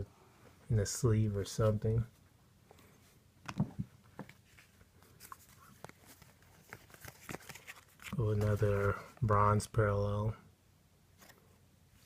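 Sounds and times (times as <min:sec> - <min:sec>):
trading cards being handled: 0:03.4 - 0:09.6.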